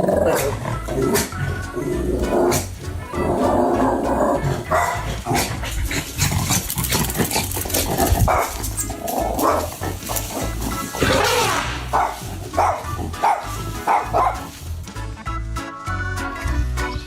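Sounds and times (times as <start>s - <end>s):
background music: 0.0s - 17.0s
dog barking: 4.6s - 6.0s, 8.1s - 14.5s.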